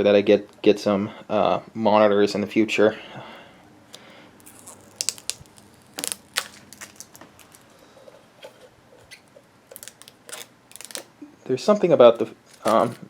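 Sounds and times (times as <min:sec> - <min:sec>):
plastic film crackling: 0:03.9 - 0:07.8, 0:09.7 - 0:11.1, 0:12.2 - 0:13.0.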